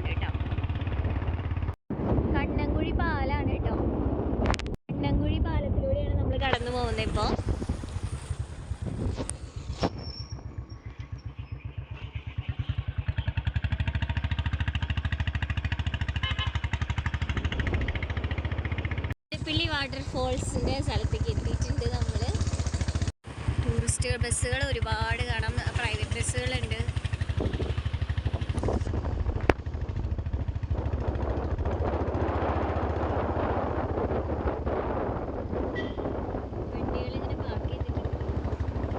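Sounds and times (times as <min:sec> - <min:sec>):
wind rushing over microphone: 0:00.0 - 0:10.6, 0:17.2 - 0:18.3, 0:19.3 - 0:24.2, 0:24.8 - 0:38.9
motorcycle engine running: 0:00.0 - 0:38.9.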